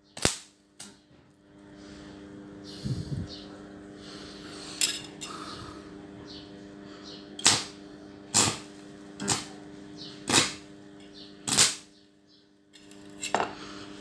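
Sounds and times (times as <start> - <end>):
welding arc crackling: 0.0 - 0.6, 7.4 - 9.6, 10.2 - 10.7, 11.4 - 11.9
transformers humming: 0.0 - 14.0
sharp arc cracks: 0.2 - 0.6, 7.4 - 9.5, 10.3 - 10.6, 11.4 - 11.9.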